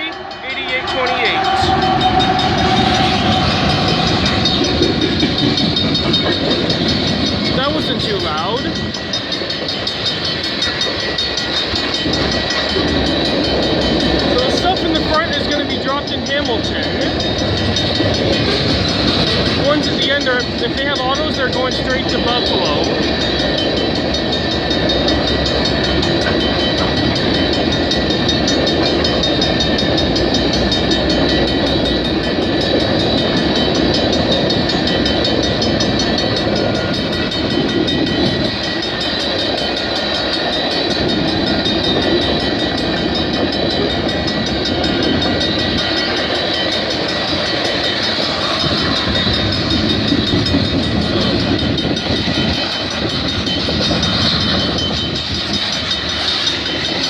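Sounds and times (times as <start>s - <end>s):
thin high tones: 0.0s - 5.6s
train wheels rumbling on rail: 0.0s - 57.0s.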